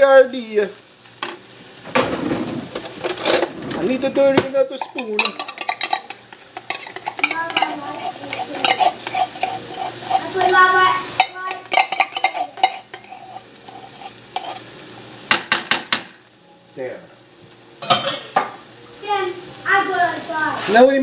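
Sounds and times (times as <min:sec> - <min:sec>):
sauce sizzling: 0:00.0 - 0:21.0
spoon scraping a pan: 0:02.2 - 0:15.9.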